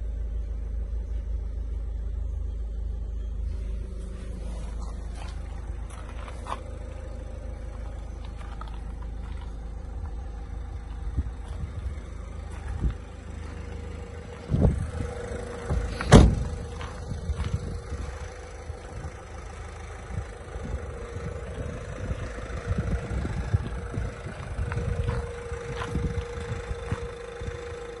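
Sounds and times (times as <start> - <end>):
diesel engine idling: 0.0 - 28.0
loud thump: 15.7 - 16.7.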